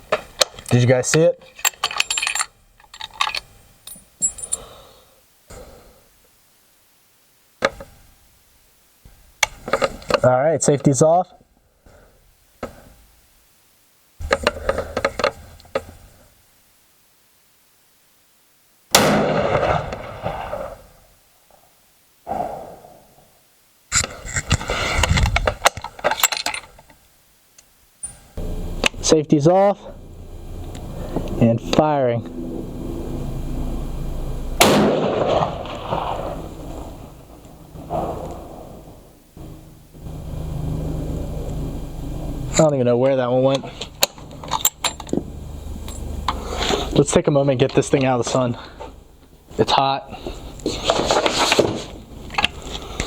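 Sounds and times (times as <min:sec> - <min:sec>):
rifle bolt clicks and clinks: 0:01.5 - 0:04.6
sudden thud: 0:34.6 - 0:39.1.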